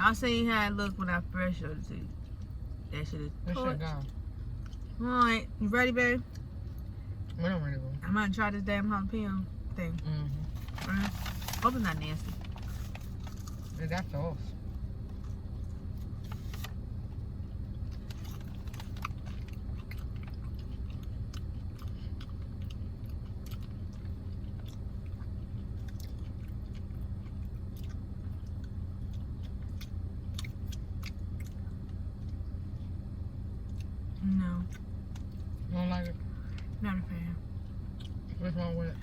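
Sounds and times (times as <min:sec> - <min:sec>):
steady low hum: 0:00.0 - 0:39.0
biting and chewing crunchy food: 0:03.5 - 0:05.0, 0:10.4 - 0:39.0.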